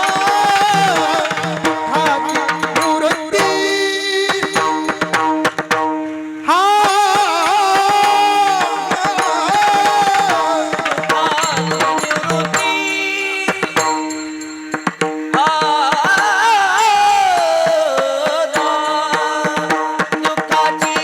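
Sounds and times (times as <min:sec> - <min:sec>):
man singing ornamented phrase: 0:00.0 - 0:05.1, 0:06.5 - 0:14.2
mridang drum strokes: 0:00.0 - 0:21.0.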